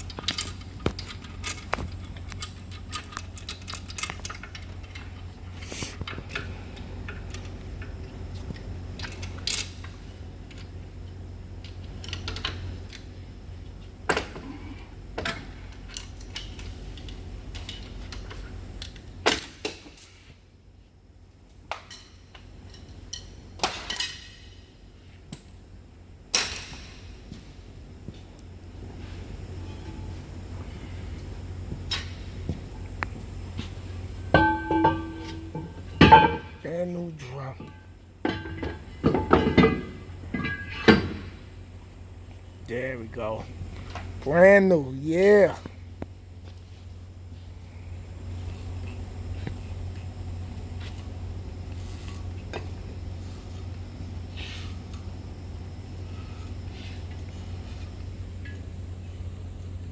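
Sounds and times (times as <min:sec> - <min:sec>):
metal tools clinking and clanking: 0:00.0 - 0:05.3, 0:14.1 - 0:17.9, 0:21.6 - 0:24.6, 0:34.3 - 0:36.6
steady low hum: 0:00.0 - 0:59.9.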